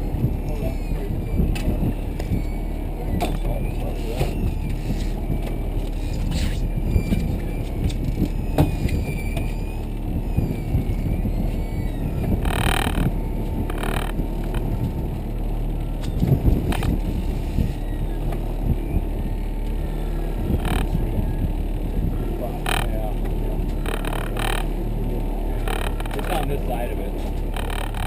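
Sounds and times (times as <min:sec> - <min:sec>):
boat motor running: 0:00.0 - 0:28.0.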